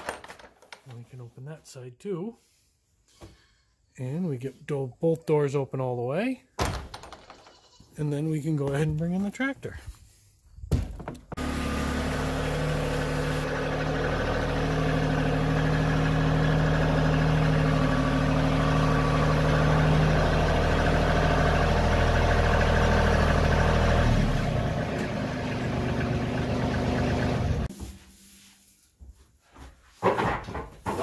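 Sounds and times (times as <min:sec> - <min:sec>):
tractor engine running: 0:11.3 - 0:27.7.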